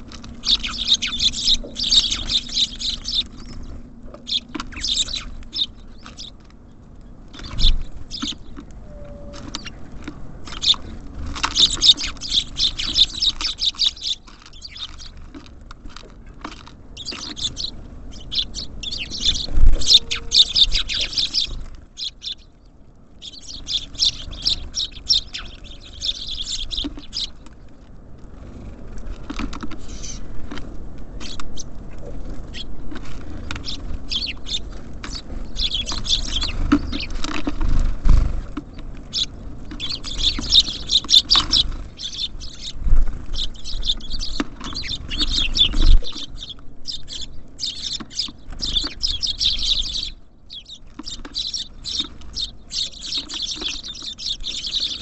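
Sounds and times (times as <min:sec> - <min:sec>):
birds thumping on feeder: 0:00.0 - 0:22.5, 0:23.2 - 0:55.0
birds pecking and scrabbling: 0:00.0 - 0:55.0
small songbirds chirping: 0:00.0 - 0:55.0.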